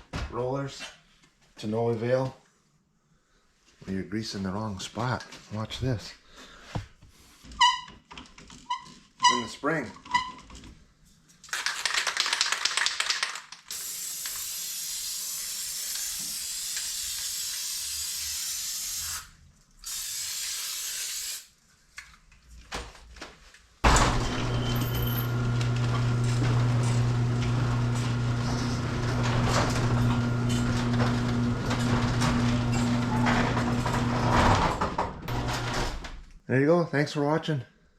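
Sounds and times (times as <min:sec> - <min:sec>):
aerosol spray hissing: 0:13.7 - 0:21.5
garage door opener motor humming: 0:23.8 - 0:36.1.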